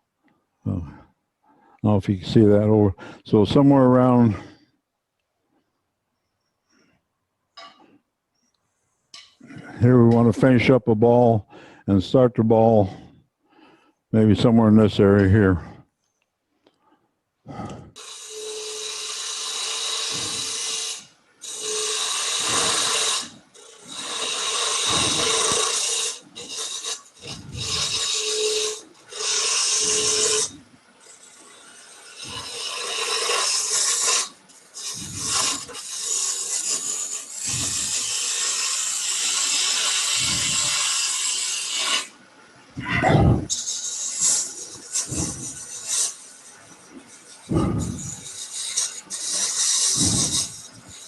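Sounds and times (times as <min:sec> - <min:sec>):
lathe tool cutting wood: 0:17.6 - 0:42.2, 0:43.1 - 0:51.0.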